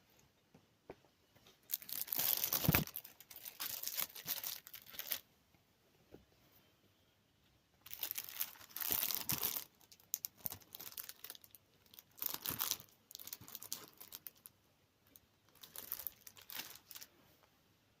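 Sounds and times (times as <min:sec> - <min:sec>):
packaging crinkling: 0:01.7 - 0:05.2, 0:07.8 - 0:14.5, 0:15.5 - 0:17.1.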